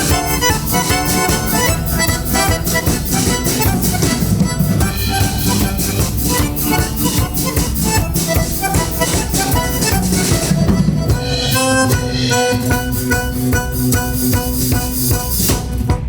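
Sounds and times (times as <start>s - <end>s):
live band playing: 0.0s - 16.0s
steady drum beat: 0.0s - 16.0s.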